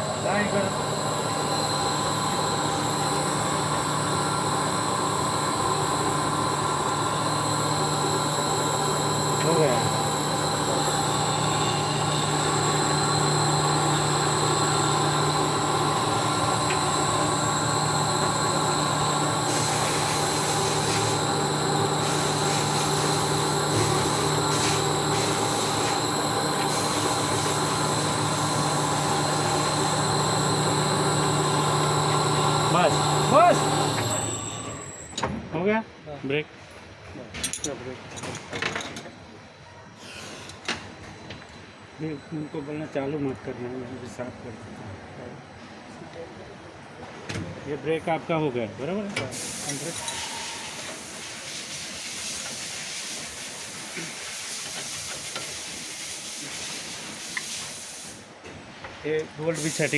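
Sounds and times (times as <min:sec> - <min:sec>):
hoist motor hum and whine: 0:00.0 - 0:35.6, 0:48.9 - 0:58.6.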